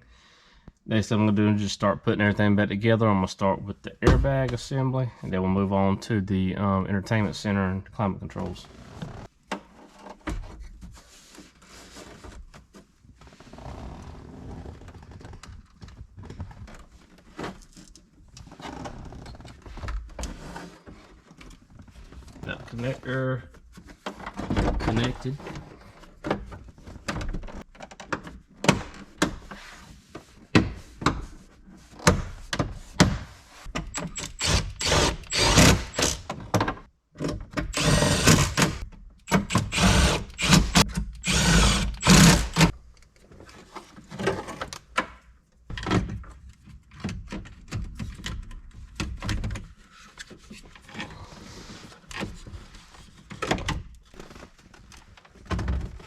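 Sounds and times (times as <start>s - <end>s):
cordless drill running: 34.1s - 36.2s, 37.7s - 42.7s.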